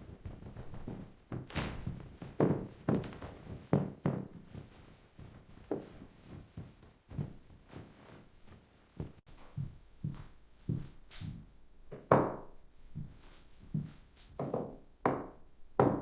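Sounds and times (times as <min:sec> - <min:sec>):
soft low thuds: 0:00.0 - 0:11.6.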